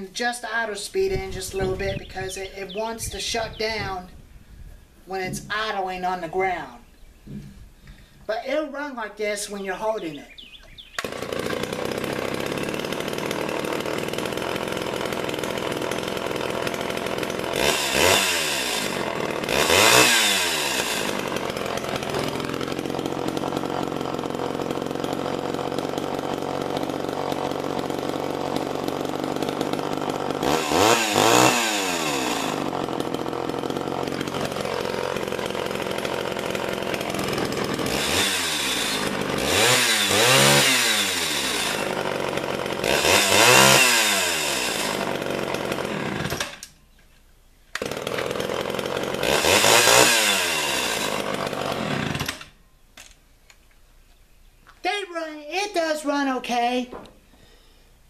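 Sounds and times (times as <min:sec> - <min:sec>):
chainsaw idling and revving: 0:00.0 - 0:04.0, 0:09.4 - 0:46.8, 0:47.7 - 0:52.6.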